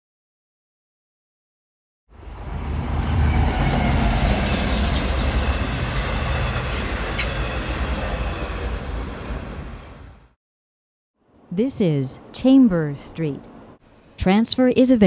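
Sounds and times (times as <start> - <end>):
subway train rumbling on rails: 2.1 - 10.4.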